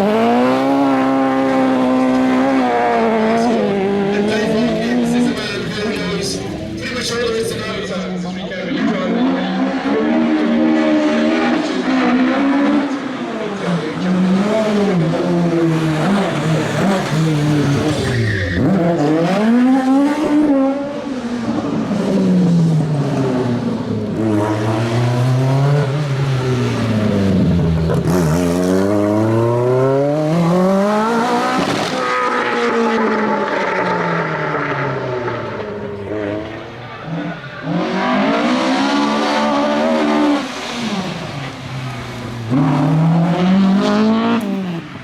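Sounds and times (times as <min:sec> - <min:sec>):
rally car engine revving: 0:00.0 - 0:45.0
tyre and road noise: 0:00.0 - 0:45.0.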